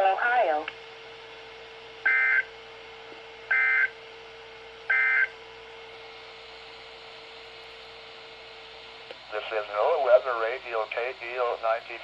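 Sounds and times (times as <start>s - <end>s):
digital data tone bursts: 2.1s - 2.5s, 3.5s - 3.9s, 4.9s - 5.3s.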